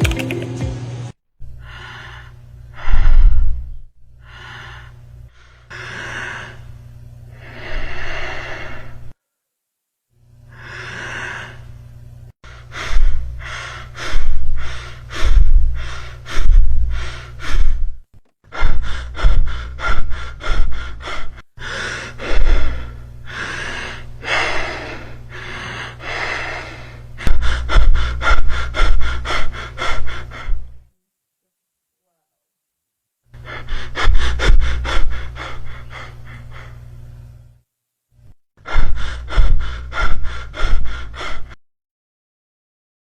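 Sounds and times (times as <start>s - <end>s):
steady low hum: 0.7s - 9.2s, 10.2s - 30.9s, 33.3s - 41.6s
quick noisy breaths: 1.6s - 9.2s, 12.4s - 30.8s, 33.4s - 37.4s, 38.6s - 41.6s.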